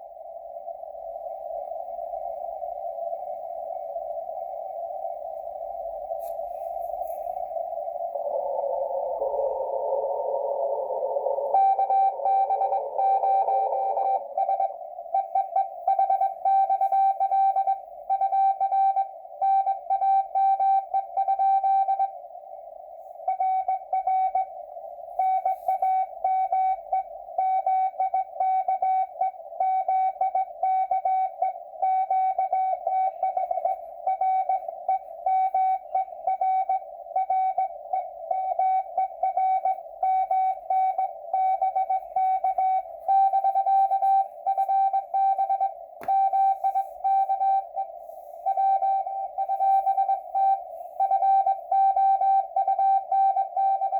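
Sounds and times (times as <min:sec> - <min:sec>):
radio receiver hiss: 0:00.0 - 0:18.1
morse code tone: 0:08.4 - 0:22.2, 0:25.2 - 0:53.9.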